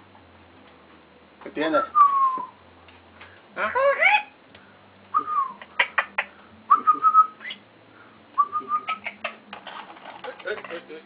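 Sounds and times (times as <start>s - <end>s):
parrot whistling: 3.6s - 4.3s, 5.1s - 7.6s, 8.4s - 9.4s.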